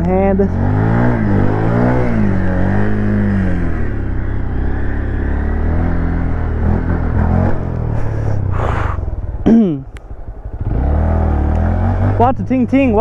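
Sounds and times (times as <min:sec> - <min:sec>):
motorcycle engine running: 0:00.0 - 0:13.0
short hissing rush: 0:07.9 - 0:09.2.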